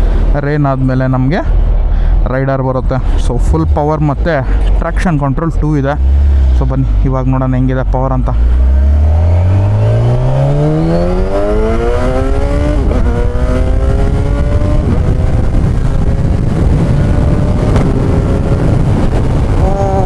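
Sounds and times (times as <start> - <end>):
motorcycle engine accelerating hard: 8.3 - 20.0.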